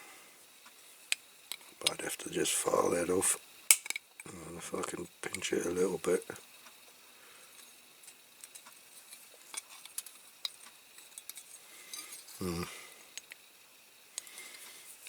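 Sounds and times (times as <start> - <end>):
brief vocal sound: 12.4 - 12.9.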